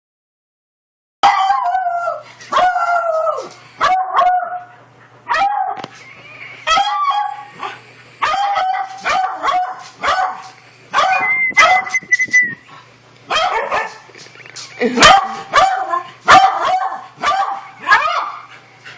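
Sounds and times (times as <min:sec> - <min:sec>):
dog barking and yelping: 0:01.2 - 0:11.9, 0:13.3 - 0:18.6.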